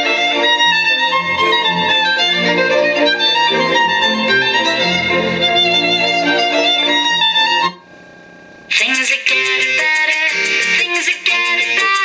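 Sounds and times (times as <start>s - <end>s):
violin music through speaker: 0.0s - 7.8s, 8.7s - 12.0s.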